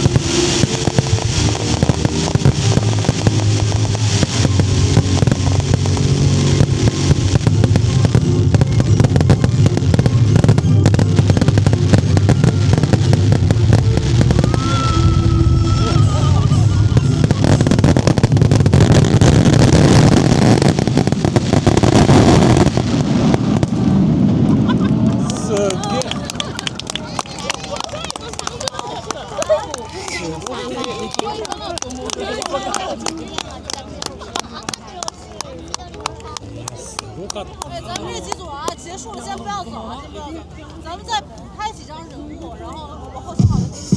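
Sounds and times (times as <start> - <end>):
music playing: 0.0 - 22.8
fireworks bursting with crackling: 0.0 - 39.4.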